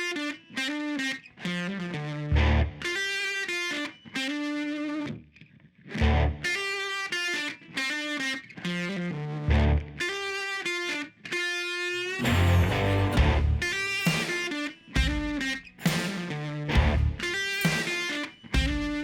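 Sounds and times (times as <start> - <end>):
distorted electric guitar chords: 6.0 - 6.4, 9.5 - 9.9, 12.2 - 19.0
heavy low hits: 12.3 - 13.7, 16.8 - 17.3.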